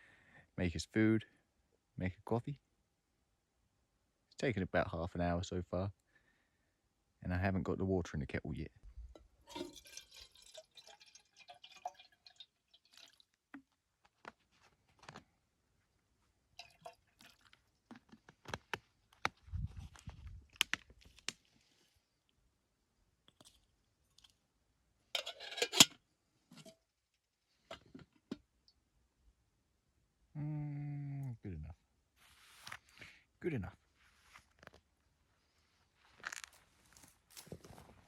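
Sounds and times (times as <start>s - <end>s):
clatter of cooking gear: 25.2s - 26.8s.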